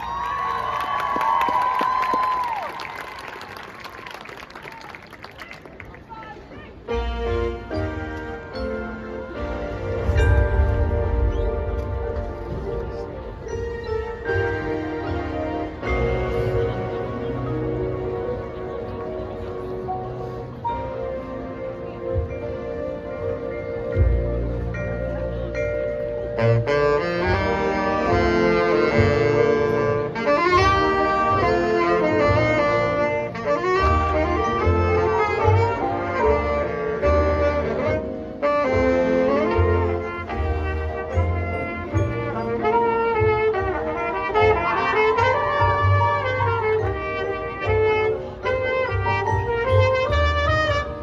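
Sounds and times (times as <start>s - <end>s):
brass chords: 6.8s - 51.0s
marching band playing: 6.8s - 51.0s.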